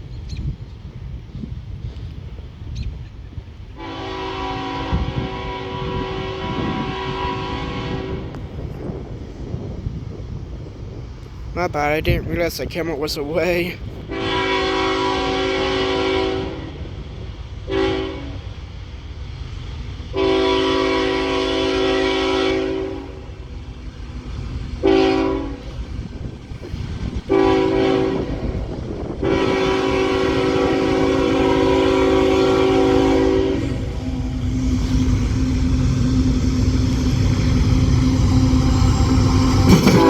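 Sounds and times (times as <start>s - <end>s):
train rumble: 0.0s - 40.0s
locomotive air horn blasts: 3.8s - 8.4s, 14.1s - 16.8s, 17.7s - 18.5s, 20.1s - 23.2s, 24.8s - 25.7s, 27.3s - 28.6s, 29.2s - 35.1s, 39.6s - 40.0s.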